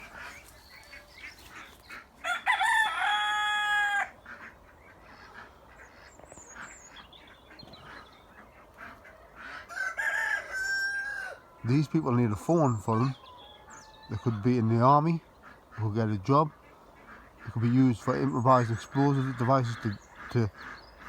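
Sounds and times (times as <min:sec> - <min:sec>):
quiet bird calls: 0:00.0 - 0:02.8, 0:04.1 - 0:09.8, 0:11.3 - 0:21.0
rooster crowing: 0:02.2 - 0:04.2, 0:09.6 - 0:11.7.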